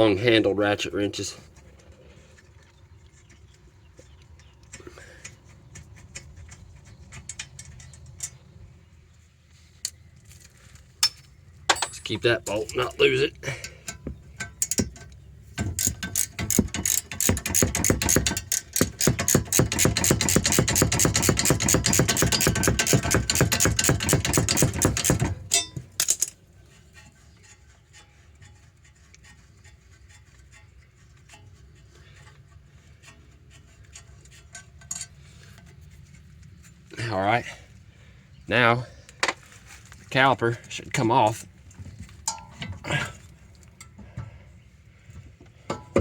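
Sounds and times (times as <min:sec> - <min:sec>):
ratchet wrench clicking: 0:15.7 - 0:26.3.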